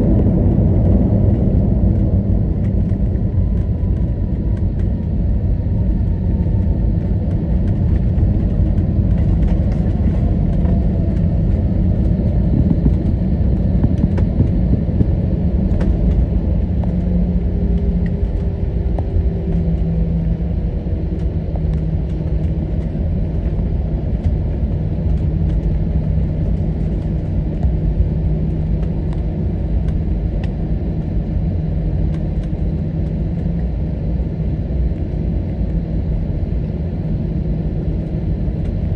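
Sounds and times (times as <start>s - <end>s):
aircraft cabin engine rumble: 0.0s - 38.9s
steady low engine tone: 0.0s - 38.9s.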